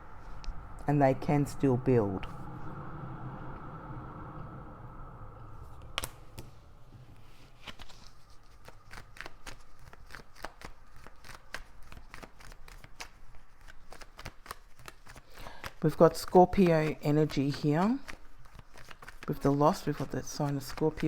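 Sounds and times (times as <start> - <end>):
cards flicking while shuffled: 7.6 - 21.0
cards snapping: 8.6 - 15.8.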